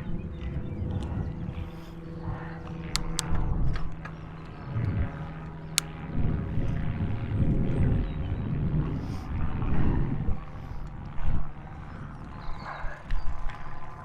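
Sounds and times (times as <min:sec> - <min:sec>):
steady low hum: 0:00.0 - 0:14.0
wind buffeting microphone: 0:00.0 - 0:14.0
bicycle clicks and rattles: 0:02.8 - 0:04.9.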